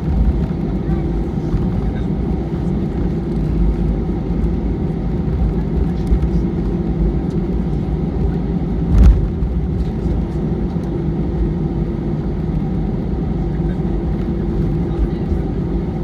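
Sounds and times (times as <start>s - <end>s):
airplane cabin rumble: 0.0s - 16.0s
loud thump: 8.9s - 9.5s.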